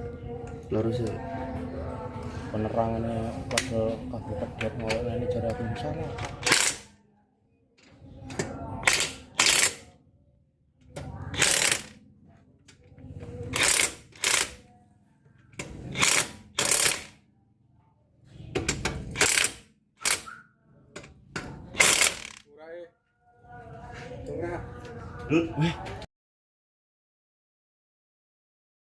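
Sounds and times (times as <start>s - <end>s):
ratchet wrench clicking: 6.4s - 6.9s, 8.8s - 9.8s, 11.3s - 11.9s, 13.5s - 14.6s, 15.9s - 17.1s, 18.7s - 20.3s, 21.8s - 22.4s.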